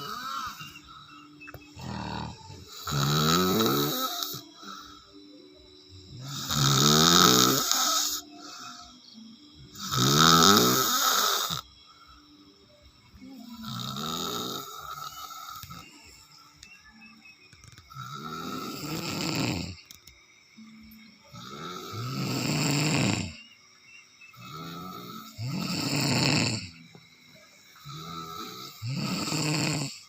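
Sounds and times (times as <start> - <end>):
loud rough snoring: 0.0 - 0.8, 1.5 - 4.8, 6.1 - 8.2, 9.7 - 11.6, 13.6 - 15.8, 17.9 - 19.8, 21.3 - 23.4, 24.4 - 26.8, 27.8 - 30.0.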